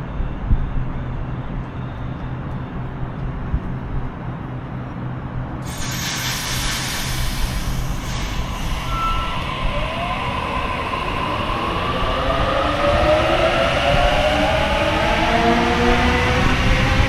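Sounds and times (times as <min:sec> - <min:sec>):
electric train rumble: 0:00.0 - 0:17.0
train whining tones falling: 0:06.7 - 0:17.0.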